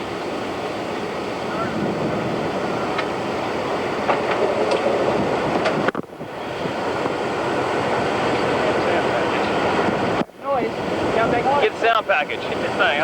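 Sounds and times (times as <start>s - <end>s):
wind and rain rushing: 0.0s - 13.0s.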